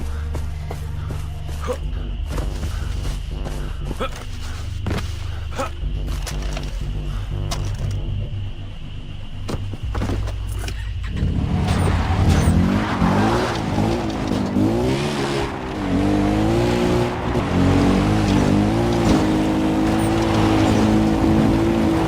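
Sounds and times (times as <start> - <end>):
video game car engine revving: 11.1 - 22.0.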